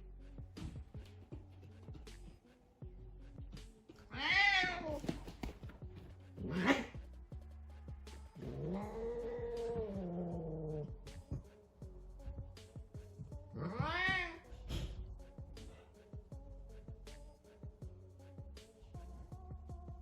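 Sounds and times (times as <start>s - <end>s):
cat meowing: 4.1s - 5.2s, 6.4s - 6.9s, 8.4s - 10.9s, 13.5s - 14.5s.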